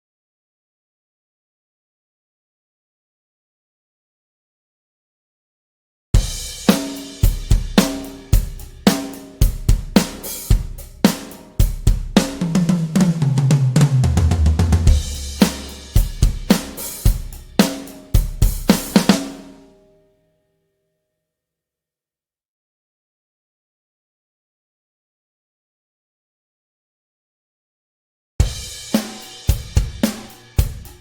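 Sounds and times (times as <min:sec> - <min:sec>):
drum kit groove: 0:06.2 - 0:19.6, 0:28.4 - 0:31.0
tom fill: 0:06.2 - 0:19.6.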